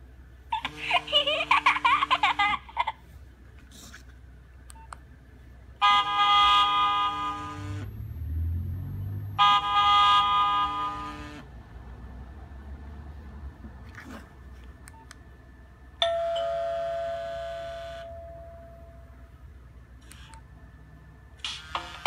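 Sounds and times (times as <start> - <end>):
ringtone car horn honks: 5.8 - 7.9, 9.3 - 11.5, 16.0 - 18.8.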